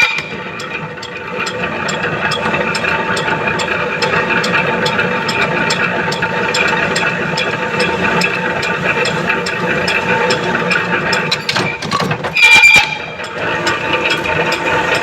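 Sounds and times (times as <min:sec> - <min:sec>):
regular ticking: 0:00.0 - 0:11.5, 0:13.0 - 0:15.0
machine tool whining: 0:00.0 - 0:15.0.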